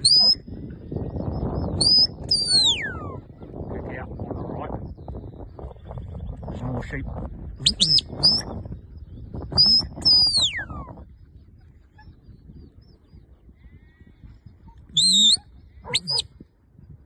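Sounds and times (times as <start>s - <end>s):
shepherd's whistle: 0.0s - 0.4s, 1.8s - 3.1s, 7.6s - 8.5s, 9.6s - 10.9s, 14.9s - 16.3s.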